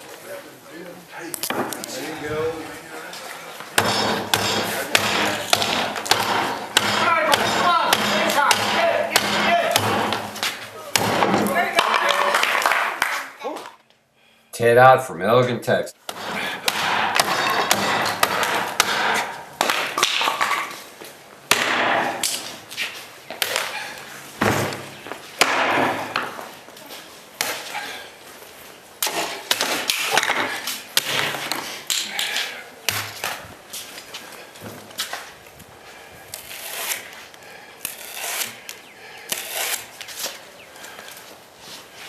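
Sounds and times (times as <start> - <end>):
knife chopping strikes: 16.1 - 20.1.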